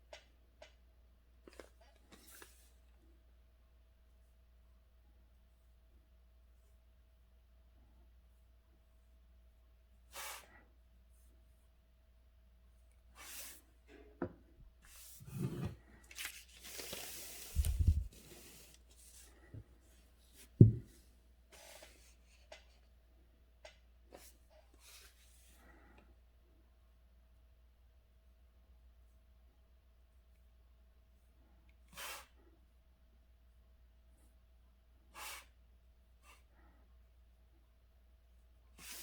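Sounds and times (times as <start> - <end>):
paper rustling and scraping: 14.9 - 19.4
low thump: 20.6 - 20.9.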